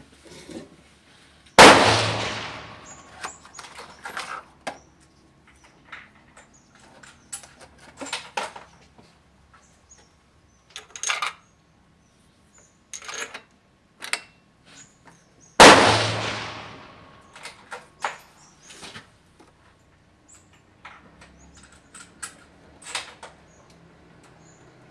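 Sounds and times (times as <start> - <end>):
rifle shot: 1.6 - 3.2, 15.6 - 17.2
handling clicks and rustles: 1.9 - 10.1, 12.9 - 24.8.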